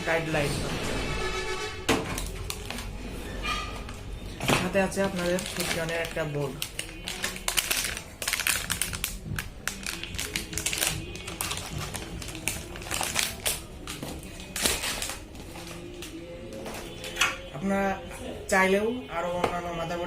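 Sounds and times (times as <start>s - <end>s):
music playing: 0.0s - 20.0s
packaging being handled: 2.2s - 3.0s, 4.3s - 17.2s.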